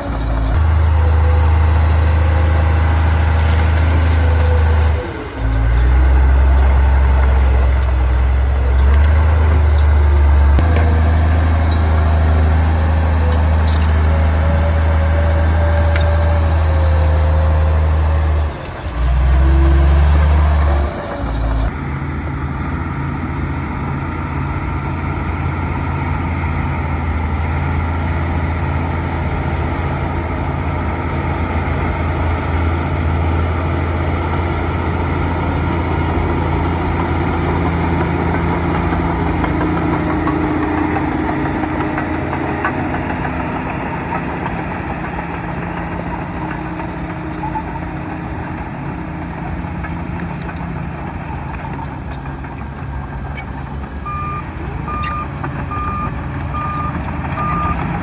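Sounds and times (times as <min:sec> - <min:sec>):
bulldozer diesel engine running: 0:00.0 - 0:58.0
reversing alarm beeping: 0:54.1 - 0:57.9.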